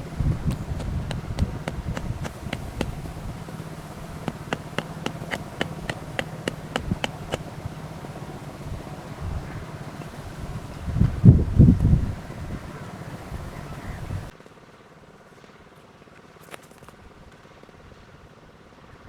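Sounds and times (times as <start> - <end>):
rapid sharp knocks: 0.0 - 10.8
wind rumble on microphone: 0.0 - 14.3.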